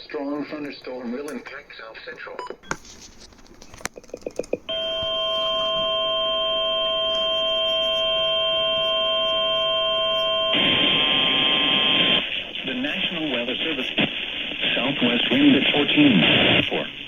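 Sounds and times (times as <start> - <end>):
static hiss: 4.6 - 17.0
steady alarm tone: 4.7 - 13.5.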